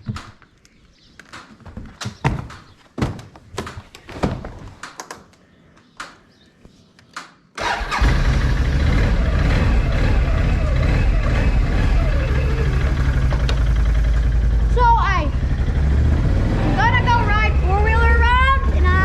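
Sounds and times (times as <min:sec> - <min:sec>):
knocks and clunks: 0:00.0 - 0:00.6, 0:01.2 - 0:05.4, 0:12.3 - 0:14.0
atv engine running: 0:07.9 - 0:19.0.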